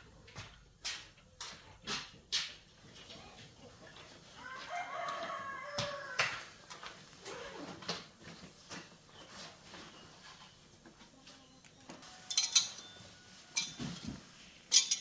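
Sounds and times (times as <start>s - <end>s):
rooster crowing: 4.4s - 6.5s.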